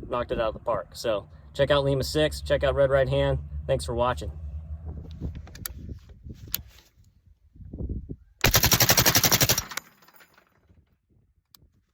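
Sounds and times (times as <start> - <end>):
automatic gunfire: 8.4 - 10.0.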